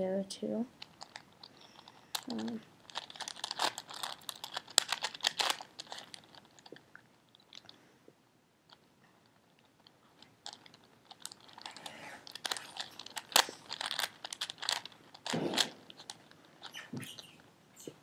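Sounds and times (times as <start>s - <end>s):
plastic puzzle cube clicking: 0.8s - 6.8s, 10.4s - 16.8s.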